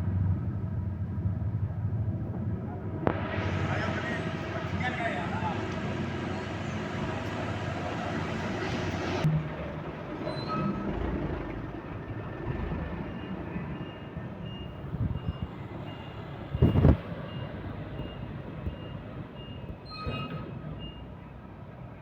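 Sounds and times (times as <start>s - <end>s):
engine rumble: 0.0s - 22.0s
reversing alarm beeping: 13.0s - 19.8s.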